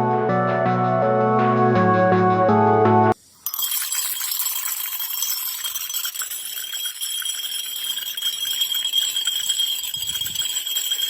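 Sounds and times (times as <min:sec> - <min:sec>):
glasses clinking: 0:03.5 - 0:11.0.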